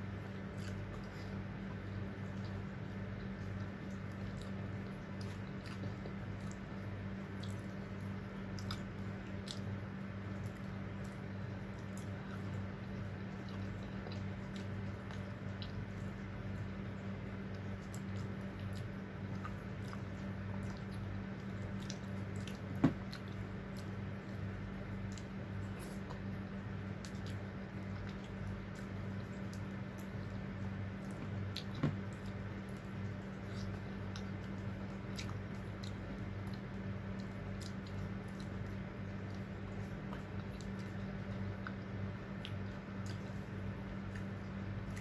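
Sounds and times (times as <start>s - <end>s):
low steady hum: 0.0s - 45.0s
person chewing: 0.1s - 45.0s
wet mouth clicks and smacks: 40.1s - 43.4s.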